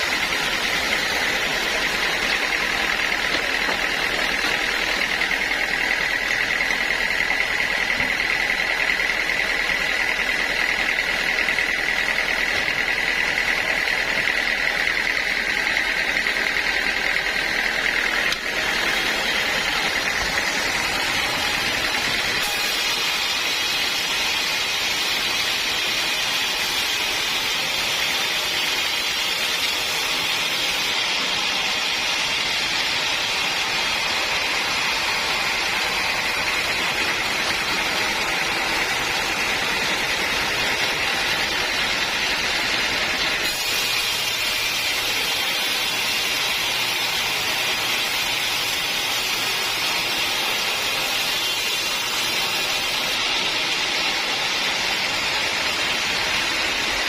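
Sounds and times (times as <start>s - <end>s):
saw cutting through wood: 0.0s - 57.0s.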